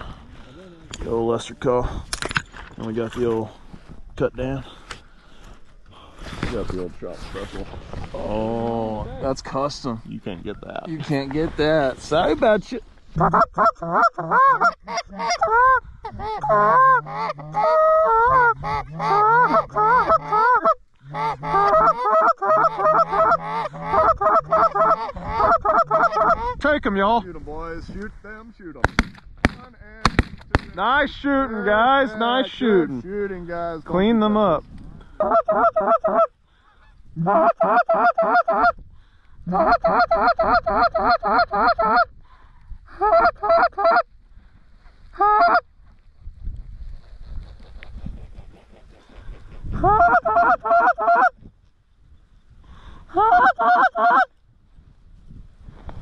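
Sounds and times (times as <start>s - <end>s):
low wind rumble: 0.0s - 17.1s, 17.7s - 53.3s, 54.3s - 56.0s
goose call honks and clucks: 13.1s - 26.6s, 35.2s - 38.8s, 39.4s - 42.2s, 42.9s - 44.1s, 45.2s - 45.6s, 49.8s - 51.4s, 53.1s - 54.3s.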